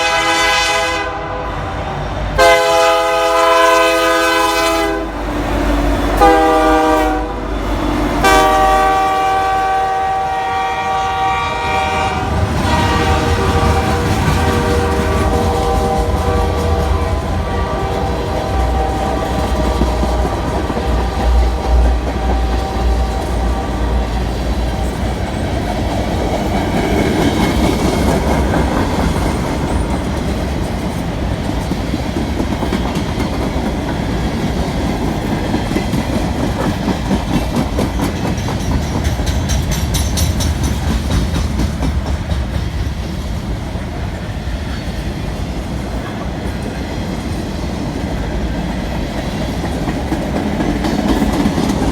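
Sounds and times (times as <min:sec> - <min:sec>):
freight train rumble: 0:00.0 - 0:51.9
wheels clattering over rail joints: 0:12.3 - 0:43.5.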